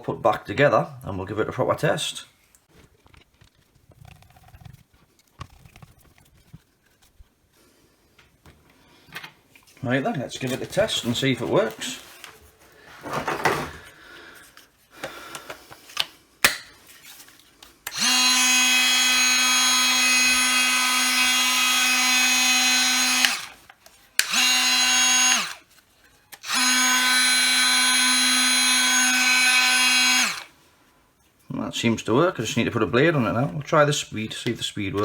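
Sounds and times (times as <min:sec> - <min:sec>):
oscillating multi-tool running: 0:17.9 - 0:23.6, 0:24.2 - 0:25.6, 0:26.4 - 0:30.5.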